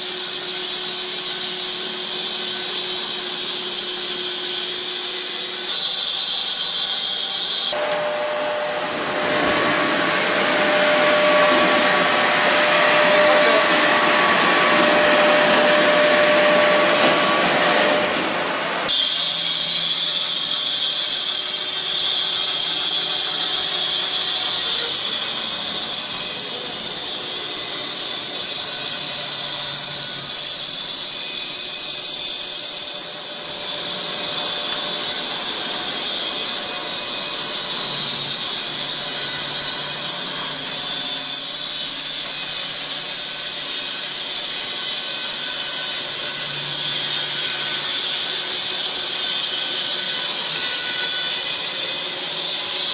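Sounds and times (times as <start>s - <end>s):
bandsaw blade sawing through log: 32.4s - 52.9s.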